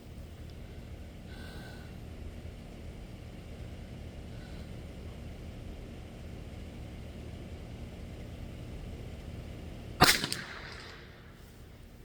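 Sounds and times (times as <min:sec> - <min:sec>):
rifle shot with echo: 0:10.0 - 0:11.4.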